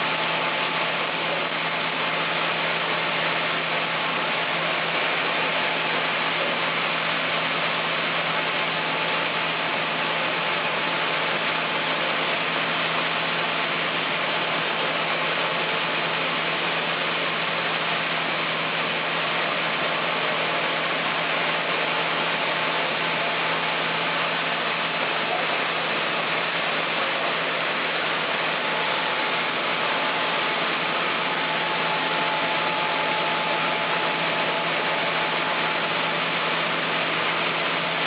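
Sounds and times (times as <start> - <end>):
sawmill machinery rushing noise: 0.0 - 38.0.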